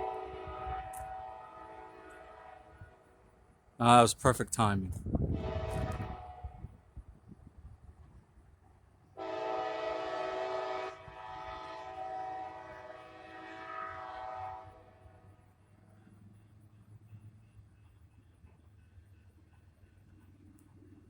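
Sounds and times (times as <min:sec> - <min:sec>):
locomotive horn: 0:00.0 - 0:03.1, 0:05.3 - 0:06.8, 0:09.2 - 0:15.2.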